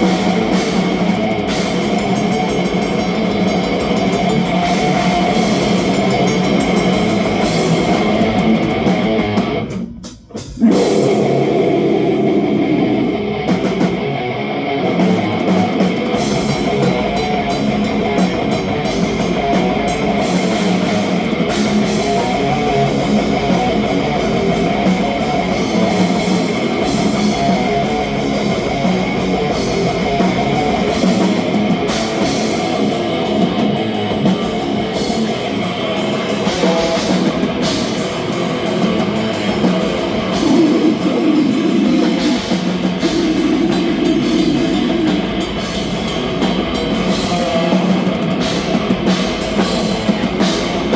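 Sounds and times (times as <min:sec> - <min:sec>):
electric guitars: 0:00.0 - 0:50.9
rapid drum hits: 0:15.2 - 0:50.9.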